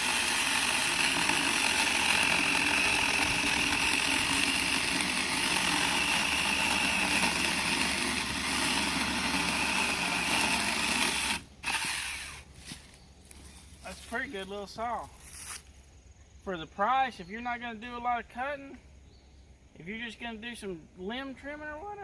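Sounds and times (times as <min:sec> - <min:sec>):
electric chainsaw cutting log: 0:00.0 - 0:12.5.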